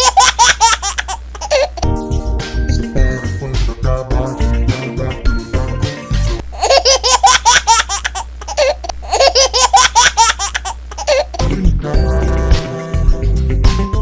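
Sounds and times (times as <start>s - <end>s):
high childlike laugh: 0.0s - 1.8s, 6.6s - 11.4s
music: 1.8s - 6.4s, 11.4s - 14.0s.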